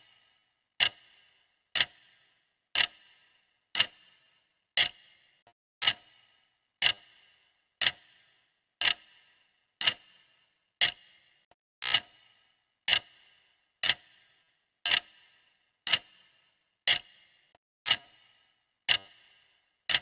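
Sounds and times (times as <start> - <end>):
clock ticking: 0.8 - 1.2, 1.8 - 2.2, 2.8 - 3.2, 3.8 - 4.2, 4.8 - 10.2, 10.8 - 11.2, 12.9 - 13.2, 13.8 - 14.2, 14.9 - 15.3, 15.9 - 16.3, 16.9 - 17.3, 17.9 - 18.3, 18.9 - 19.3.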